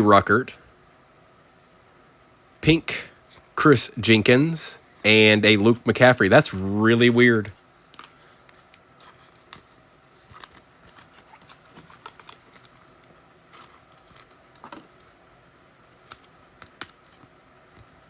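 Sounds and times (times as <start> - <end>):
trading cards being handled: 7.8 - 18.0.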